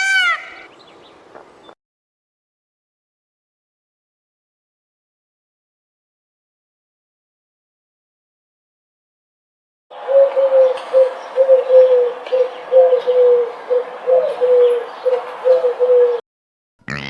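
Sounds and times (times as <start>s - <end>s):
bird cooing: 9.9s - 16.2s.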